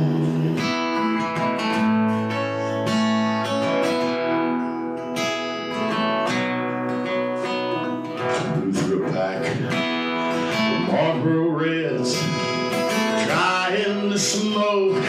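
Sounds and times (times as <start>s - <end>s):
person singing country song: 0.0s - 5.0s, 5.7s - 15.0s
acoustic guitar strumming chords: 0.0s - 15.0s.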